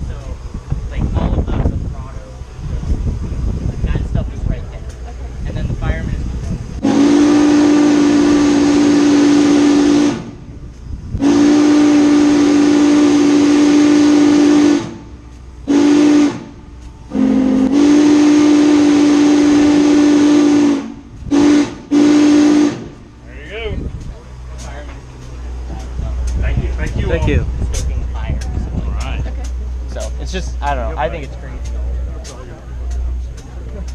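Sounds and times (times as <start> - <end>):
steam locomotive whistle: 6.8 - 10.5, 11.1 - 23.0.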